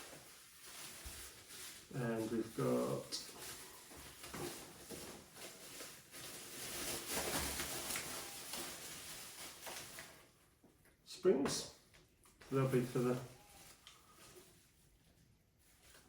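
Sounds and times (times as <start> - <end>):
packaging rustling: 0.0 - 10.4.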